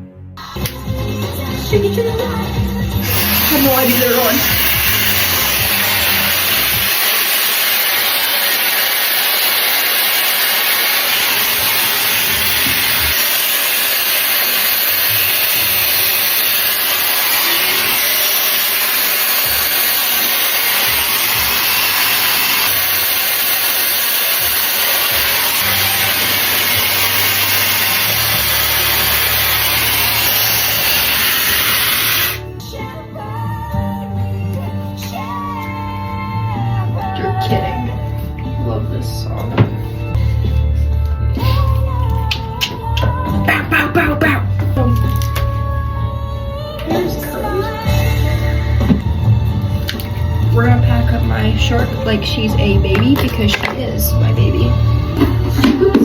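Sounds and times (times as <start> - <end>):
hair dryer blowing air: 1.9 - 32.5, 46.8 - 56.0.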